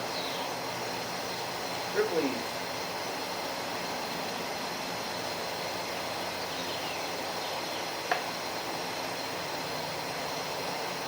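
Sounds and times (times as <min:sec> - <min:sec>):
outdoor background noise: 0:00.0 - 0:11.0.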